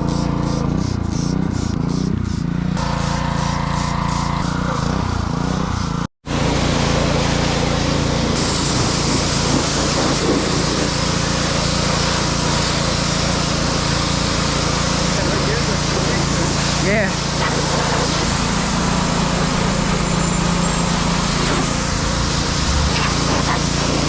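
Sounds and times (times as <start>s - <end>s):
pressure washer motor drone: 1.7s - 24.0s
water jet hissing: 6.8s - 24.0s.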